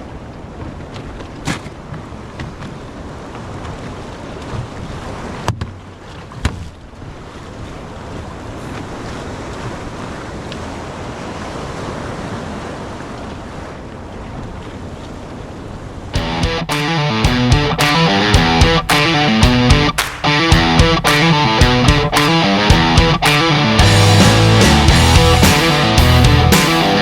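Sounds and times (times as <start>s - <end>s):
waves washing: 7.1s - 27.0s.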